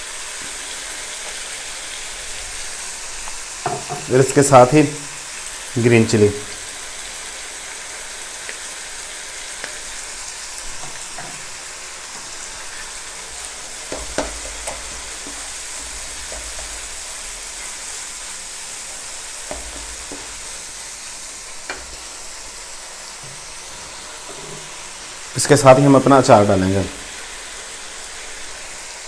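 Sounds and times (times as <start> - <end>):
paste sizzling in hot oil: 0.0 - 29.0
spoon stirring and knocking on pan: 3.6 - 4.5, 10.7 - 12.4, 13.2 - 18.0, 19.0 - 20.9, 21.5 - 22.4, 23.2 - 24.9.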